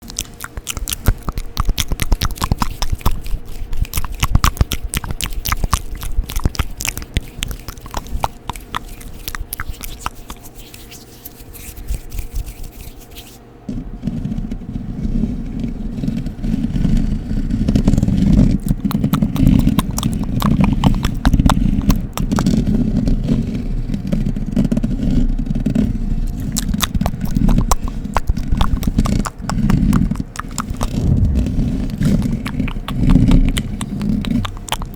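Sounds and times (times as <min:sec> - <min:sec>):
crisp scratches and clicks: 0:00.0 - 0:13.4, 0:16.0 - 0:22.8, 0:24.1 - 0:34.9
deep rubbing scratch: 0:30.0 - 0:34.4.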